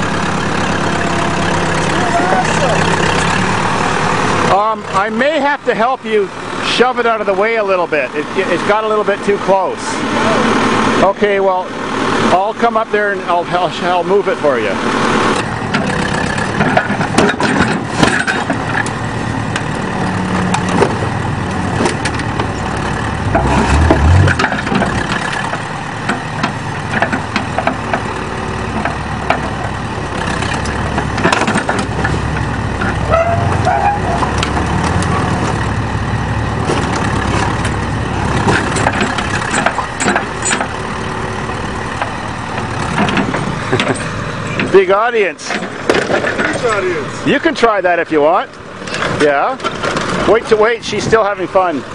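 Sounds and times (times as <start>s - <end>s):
diesel engine under load: 0.0s - 51.9s.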